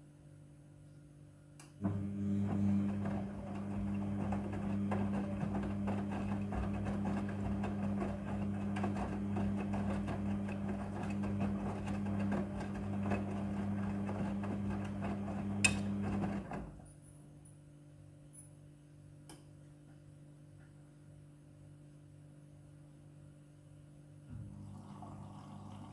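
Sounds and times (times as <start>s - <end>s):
washing machine running: 1.8s - 16.9s, 24.4s - 25.9s.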